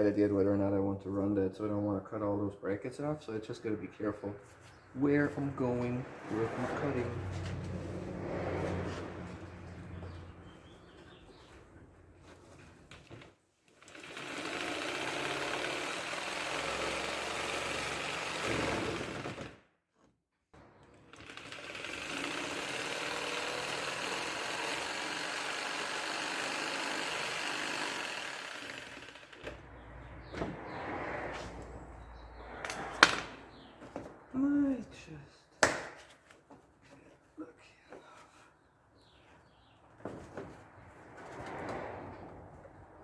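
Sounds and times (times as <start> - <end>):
angle grinder cutting bumper: 13.8 - 19.5, 20.7 - 30.3.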